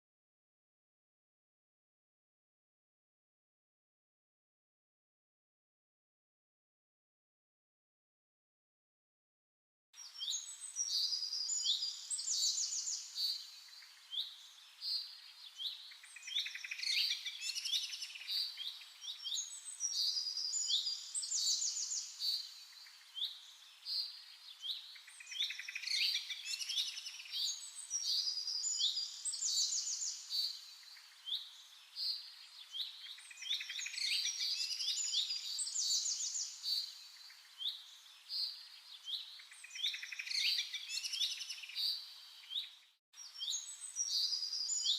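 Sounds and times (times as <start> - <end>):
birds chirping and trilling: 10.0 - 44.9.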